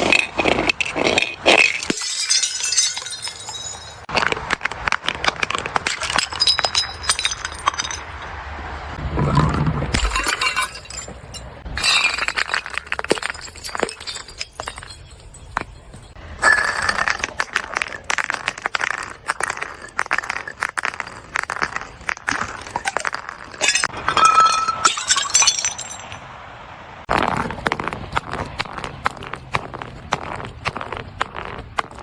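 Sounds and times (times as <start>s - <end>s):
glass bottles shattering: 0.0s - 4.2s, 5.3s - 8.3s, 9.9s - 26.2s
glass shards clinking and crunching: 0.0s - 4.3s, 5.1s - 8.3s, 9.9s - 26.2s.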